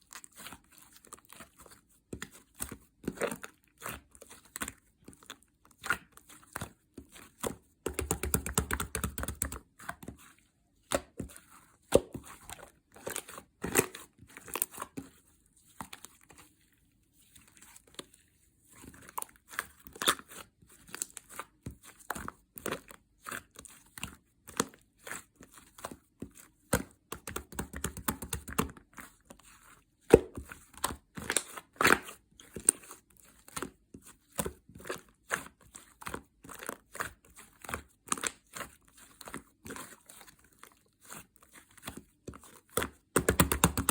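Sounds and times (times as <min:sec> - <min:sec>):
slime kneaded with sticky pops: 0:00.1 - 0:43.9.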